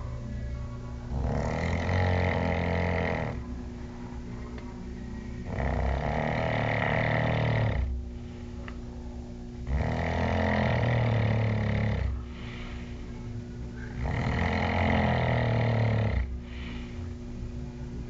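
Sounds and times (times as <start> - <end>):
loud rasping snoring: 1.1 - 3.5, 5.4 - 8.0, 9.6 - 12.2, 14.0 - 16.7.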